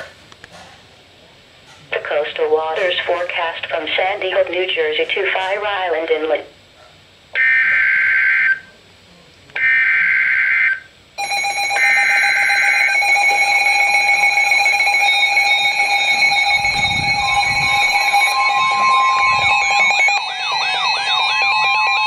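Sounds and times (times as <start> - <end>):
electronic alert alarm: 7.4 - 8.7, 9.6 - 22.0
buzzy data bursts: 14.0 - 22.0.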